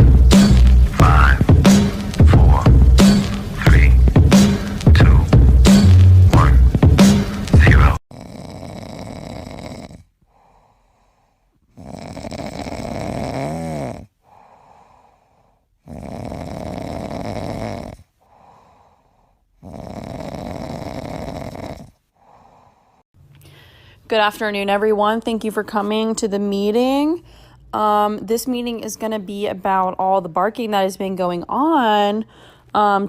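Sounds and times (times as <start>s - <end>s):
pet snoring: 7.9s - 23.0s
faint breaths: 10.1s - 12.0s, 13.6s - 16.2s, 17.8s - 19.9s, 21.8s - 24.1s, 27.2s - 27.7s, 32.2s - 32.8s.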